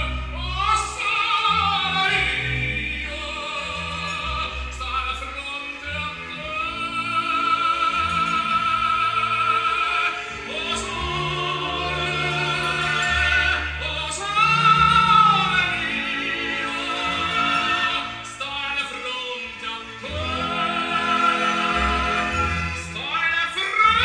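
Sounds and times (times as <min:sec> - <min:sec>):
operatic singing with vibrato: 0:00.0 - 0:24.0
orchestra playing: 0:00.0 - 0:24.0.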